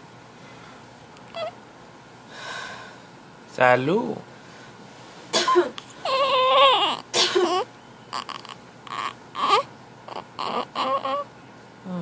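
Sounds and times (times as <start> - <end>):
infant fussing and crying: 1.3 - 1.6, 5.8 - 11.3
infant whimpering: 1.3 - 1.6, 5.8 - 11.3.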